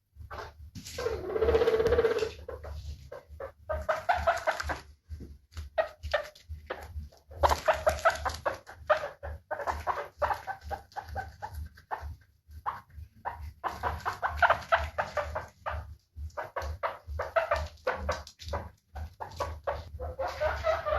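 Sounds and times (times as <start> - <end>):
guinea pig squeaking: 0.3 - 20.9.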